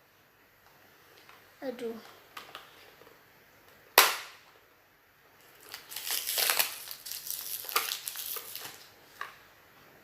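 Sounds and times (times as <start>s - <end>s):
toy packaging crinkling: 5.4s - 8.9s.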